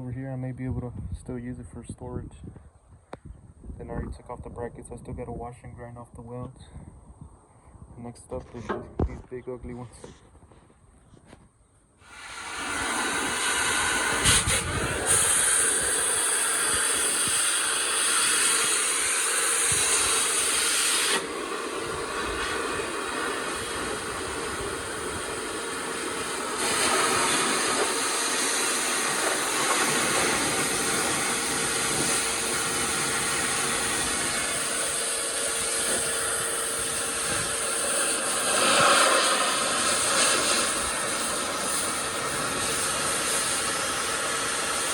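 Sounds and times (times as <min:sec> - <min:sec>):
cutting torch hissing: 0:12.0 - 0:44.9.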